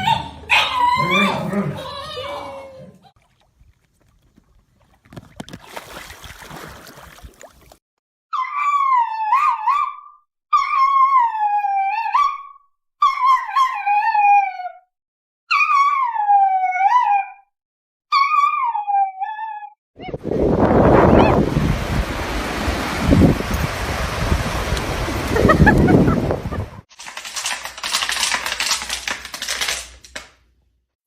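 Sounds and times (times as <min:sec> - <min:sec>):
dog howling: 0:00.0 - 0:03.0, 0:08.4 - 0:14.8.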